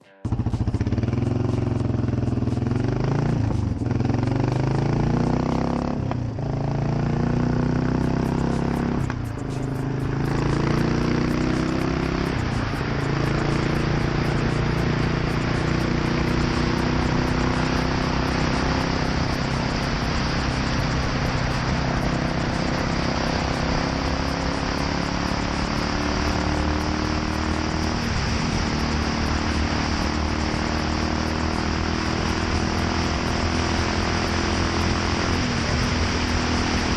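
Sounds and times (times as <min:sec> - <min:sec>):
motorcycle engine revving: 0:00.2 - 0:36.9
rushing hiss: 0:08.5 - 0:36.9.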